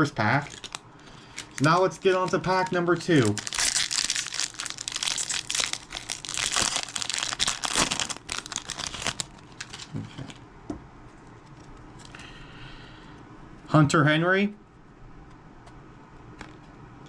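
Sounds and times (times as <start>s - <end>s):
card pack wrapper crinkling: 0.2s - 10.4s.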